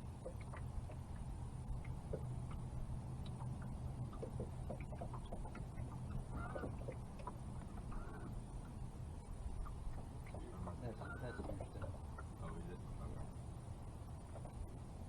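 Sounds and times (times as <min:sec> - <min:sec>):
faint ticks: 0:00.0 - 0:06.2
low steady rumble: 0:00.0 - 0:15.0.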